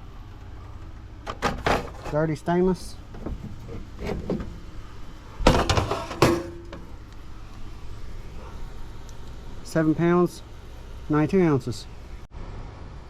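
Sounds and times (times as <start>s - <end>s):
metal scrap clanking: 1.3s - 2.4s, 3.1s - 7.0s.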